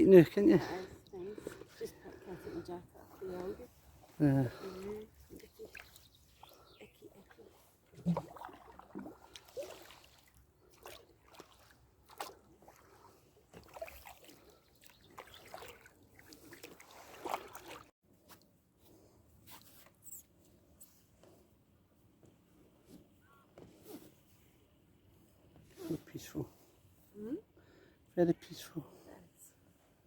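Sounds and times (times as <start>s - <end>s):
water sloshing against kayak: 0.6s - 17.9s
paddles splashing in water: 0.7s - 17.9s.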